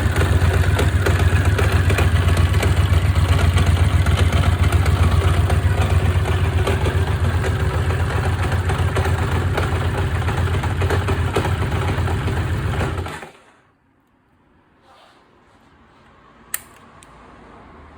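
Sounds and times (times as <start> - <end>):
motorcycle engine idling: 0.0 - 13.1.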